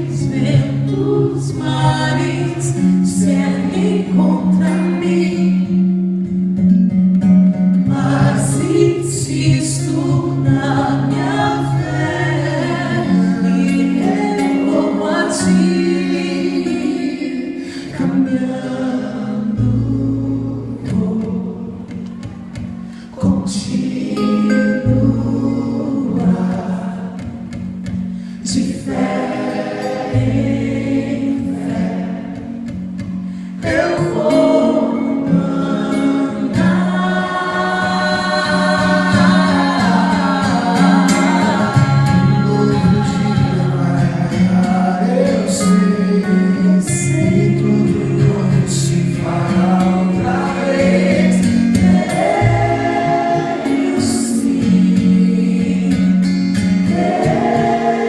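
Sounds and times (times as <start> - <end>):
choir singing sustained chords: 28.4 - 32.9, 33.6 - 44.6, 47.5 - 58.0.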